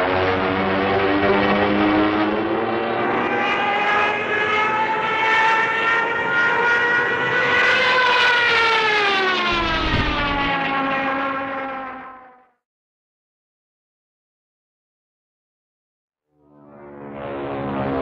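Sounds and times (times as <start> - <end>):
hand-cranked air raid siren wailing: 3.8 - 11.2.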